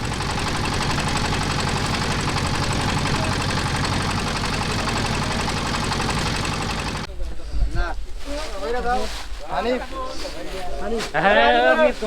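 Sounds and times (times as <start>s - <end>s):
boat engine knocking: 0.0s - 7.1s.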